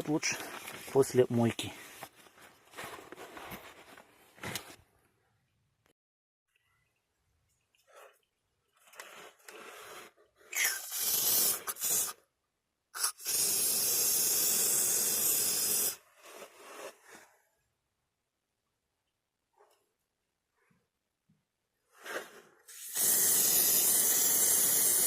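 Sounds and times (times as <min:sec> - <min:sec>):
aerosol can spraying: 0:10.6 - 0:12.2, 0:13.0 - 0:16.0, 0:22.7 - 0:25.0.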